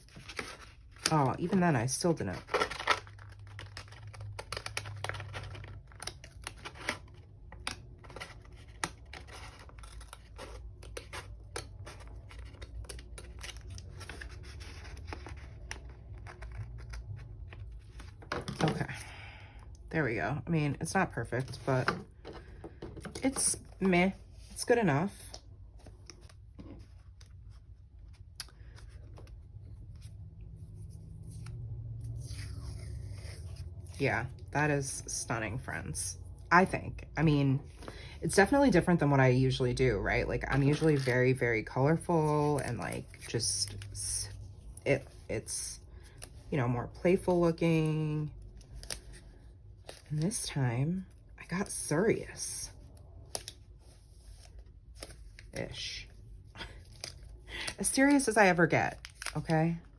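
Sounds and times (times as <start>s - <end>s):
low steady hum: 0.0s - 59.9s
paper being handled: 41.9s - 43.9s.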